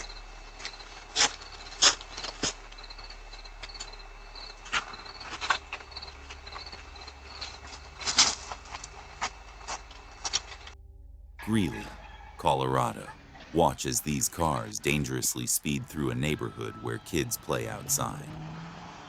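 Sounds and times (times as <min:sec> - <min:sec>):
cricket chirping: 0:00.0 - 0:10.8.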